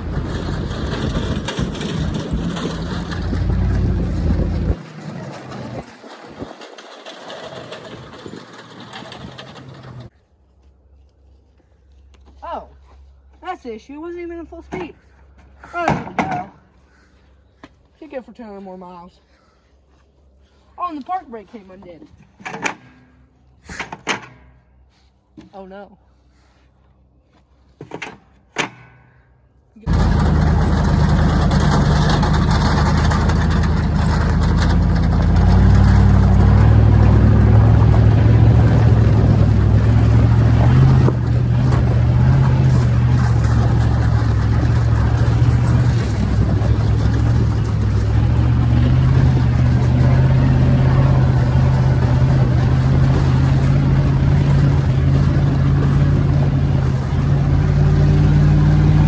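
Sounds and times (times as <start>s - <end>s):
vehicle engine running at speed: 0.0s - 10.2s, 29.8s - 59.0s.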